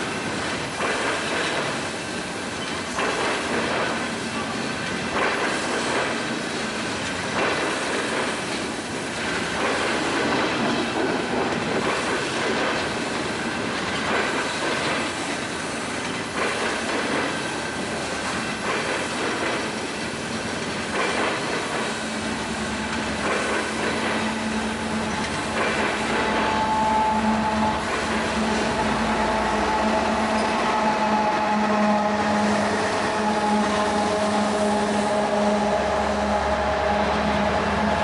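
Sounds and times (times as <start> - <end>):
train wheel and rail noise: 0.0 - 38.0
wheels clacking over rail joints: 2.6 - 31.9.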